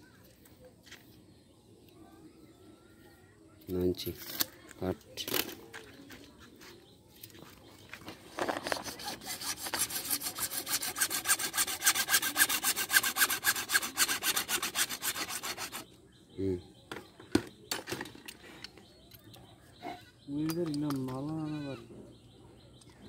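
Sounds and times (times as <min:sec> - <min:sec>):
hand saw cutting plastic pipe: 0:08.6 - 0:15.9.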